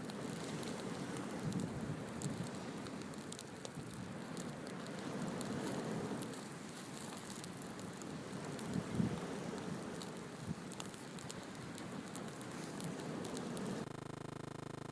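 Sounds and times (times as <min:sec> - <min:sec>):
wood fire crackling: 0:00.0 - 0:14.5.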